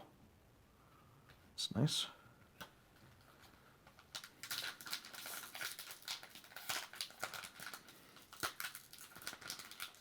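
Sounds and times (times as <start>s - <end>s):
foil wrapper crinkling and tearing: 4.0s - 10.0s.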